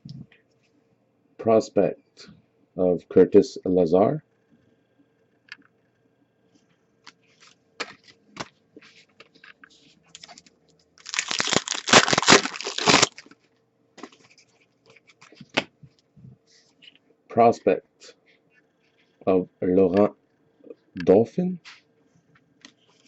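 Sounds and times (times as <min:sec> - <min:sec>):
trading cards rustling: 0:07.1 - 0:13.4
wrapper tearing open: 0:11.0 - 0:13.4.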